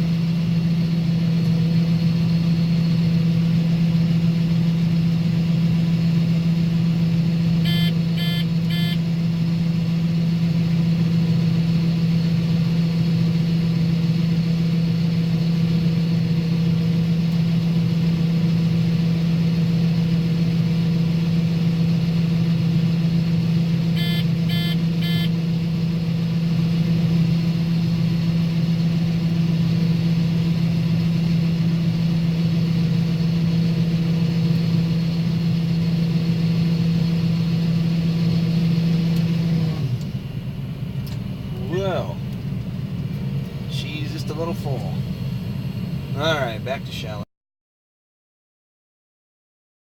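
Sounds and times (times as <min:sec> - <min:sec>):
combine harvester droning: 0:00.0 - 0:47.2
short electronic beeps: 0:07.6 - 0:09.0, 0:24.0 - 0:25.3.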